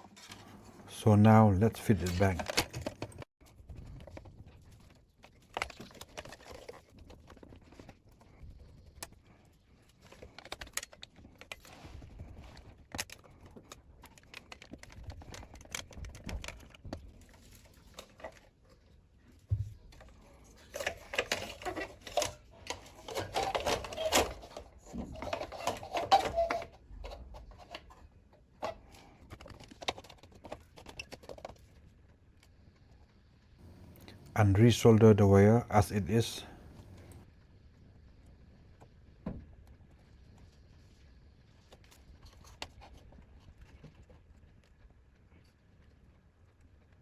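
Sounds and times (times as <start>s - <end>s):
plastic keyboard parts clicking: 1.9s - 3.2s.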